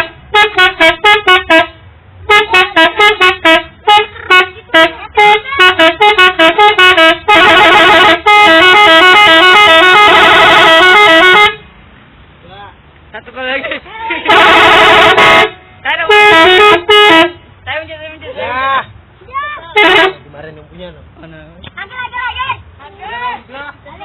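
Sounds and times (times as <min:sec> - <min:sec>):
bus musical horn: 0:00.0 - 0:11.7, 0:14.2 - 0:17.5, 0:19.7 - 0:20.2.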